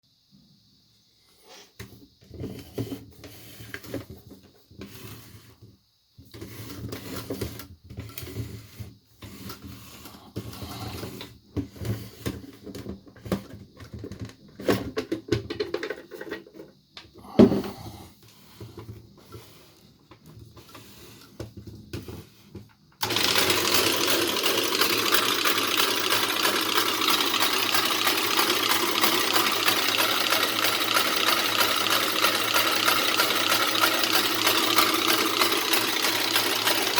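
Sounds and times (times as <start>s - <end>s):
toy sewing machine stitching: 6.4s - 12.3s, 23.0s - 36.9s.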